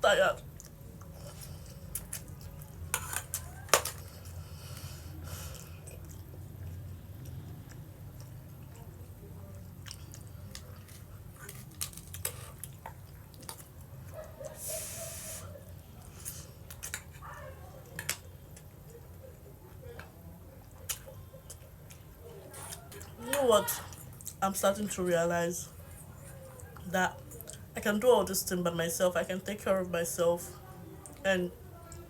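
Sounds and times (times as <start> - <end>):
person chewing with wet mouth sounds: 0.4 - 23.2, 25.7 - 27.7.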